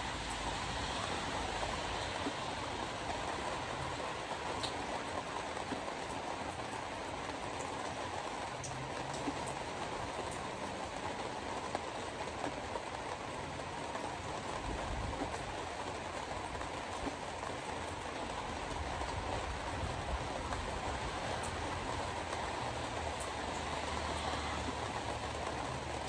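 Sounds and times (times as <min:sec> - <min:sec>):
hard rain on a car: 0:00.0 - 0:26.0
tyres hissing on wet road: 0:00.0 - 0:26.0.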